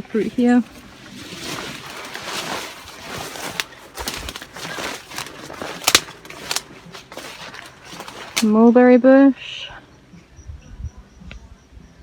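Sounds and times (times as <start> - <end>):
leaves and branches rustling: 0.0 - 8.8
twigs snapping: 0.2 - 8.6.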